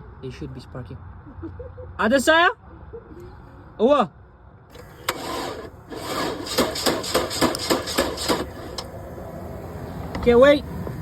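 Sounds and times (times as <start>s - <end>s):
starter cranking engine: 4.7s - 9.0s.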